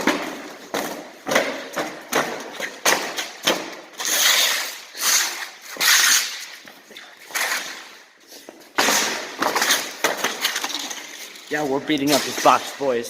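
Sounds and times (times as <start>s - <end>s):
box crunching and banging: 8.8s - 11.2s.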